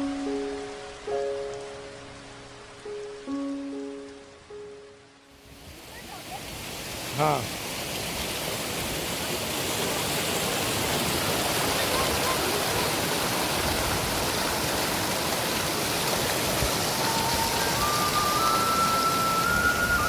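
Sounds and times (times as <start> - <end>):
waterfall rushing: 5.4 - 20.0.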